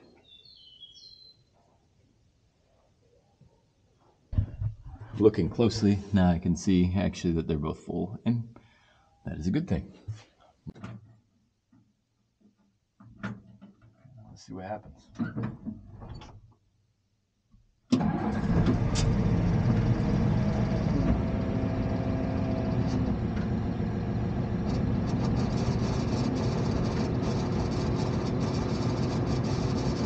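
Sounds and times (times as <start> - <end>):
tractor diesel engine running: 18.0 - 30.0.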